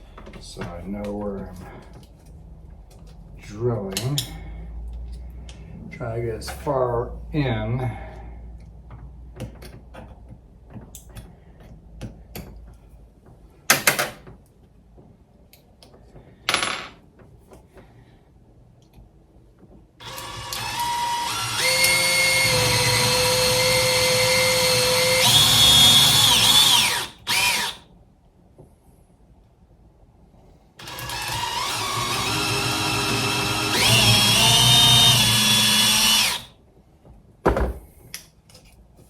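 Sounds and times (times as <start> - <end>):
cordless drill drilling: 20.0 - 27.8, 30.8 - 36.5.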